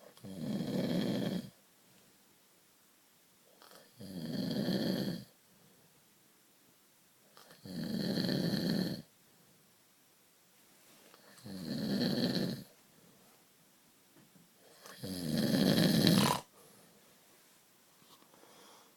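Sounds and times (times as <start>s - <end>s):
rasping snores: 0.2s - 1.6s, 3.6s - 5.3s, 7.4s - 9.1s, 11.2s - 12.7s, 14.7s - 16.5s.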